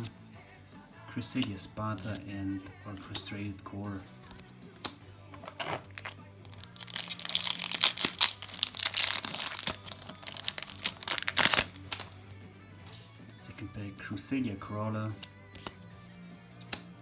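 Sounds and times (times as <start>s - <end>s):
foil wrapper crinkling and tearing: 5.4s - 12.2s.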